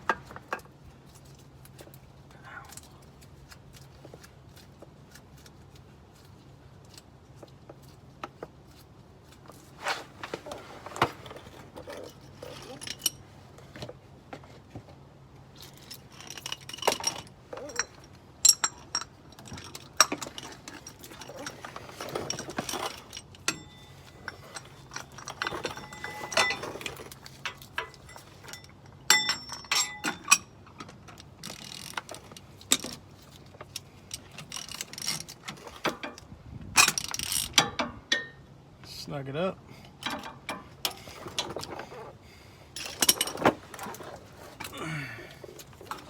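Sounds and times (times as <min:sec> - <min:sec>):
metallic clinks and scrapes: 0:09.5 - 0:13.8, 0:15.6 - 0:38.4, 0:39.9 - 0:44.8.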